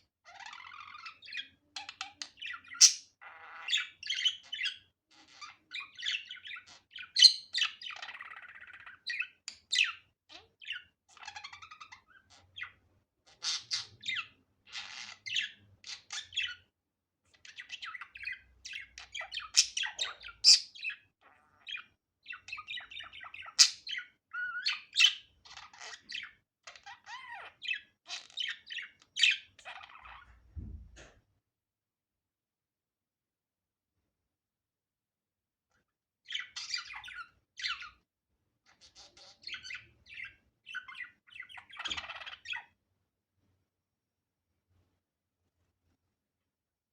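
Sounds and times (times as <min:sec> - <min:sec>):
low thump: 0:30.6 - 0:31.2.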